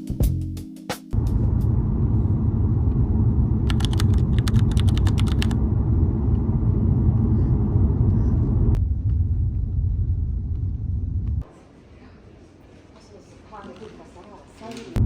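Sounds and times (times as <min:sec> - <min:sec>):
loud low rumble: 0:01.2 - 0:11.5.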